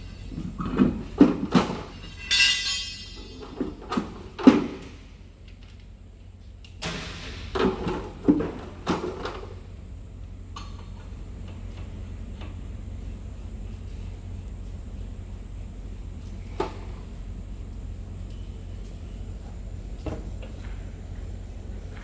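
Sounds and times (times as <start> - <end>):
steady low hum: 0.0 - 22.0
heavy metal clunks and knocks: 0.6 - 5.2.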